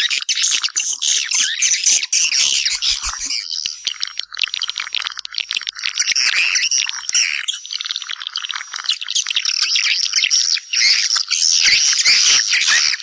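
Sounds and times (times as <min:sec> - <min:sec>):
swiftlets chirping: 0:02.2 - 0:07.1.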